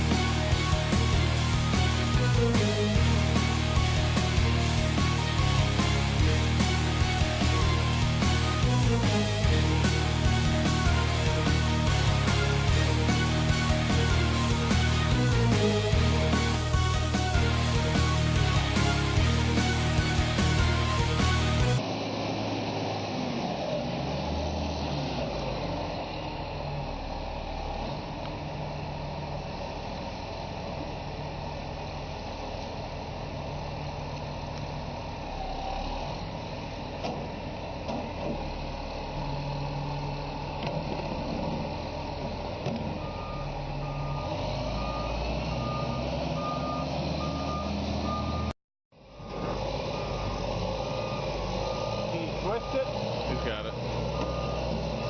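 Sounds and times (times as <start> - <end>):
reversing alarm beeping: 0.0 - 21.8, 42.9 - 48.5, 49.2 - 55.0
heavy truck engine running: 0.0 - 55.0.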